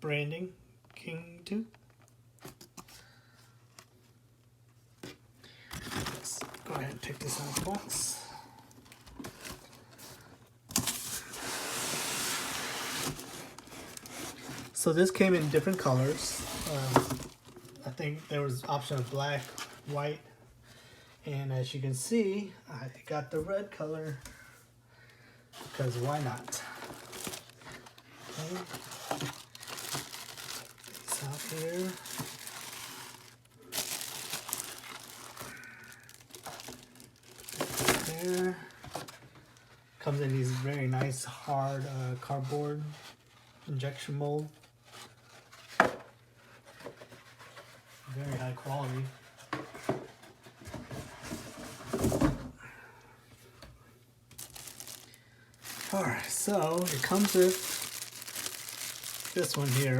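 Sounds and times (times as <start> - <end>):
cardboard packaging scraping: 5.8 - 8.0, 9.2 - 19.9, 25.5 - 39.2, 54.4 - 59.9.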